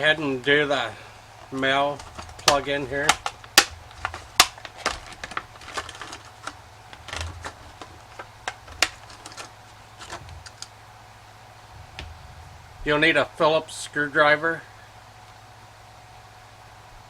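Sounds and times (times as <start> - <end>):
small parts and tools clicking: 1.5 - 10.7.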